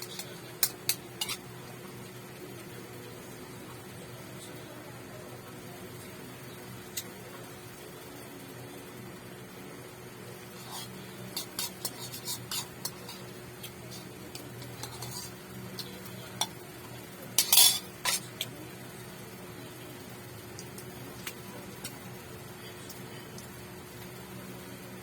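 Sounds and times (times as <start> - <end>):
utensil scraping a dish: 0.0 - 1.4, 10.5 - 16.6
steady low hum: 0.0 - 25.0
utensils clinking on a dish: 17.4 - 18.5.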